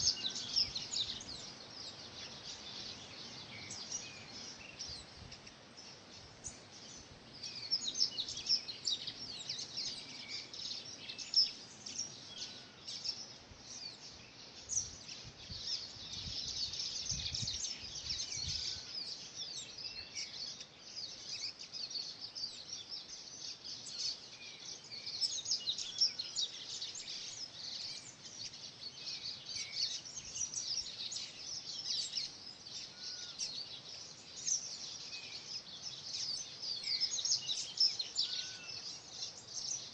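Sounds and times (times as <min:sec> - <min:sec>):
low whistled bird notes: 0:00.0 - 0:13.3
songbirds singing: 0:00.0 - 0:39.9.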